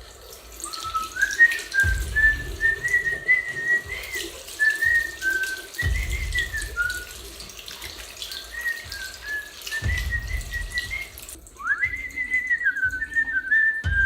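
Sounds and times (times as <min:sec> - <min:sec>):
water running from a tap: 0:00.0 - 0:14.0
person whistling a tune: 0:00.6 - 0:07.2, 0:08.3 - 0:14.0.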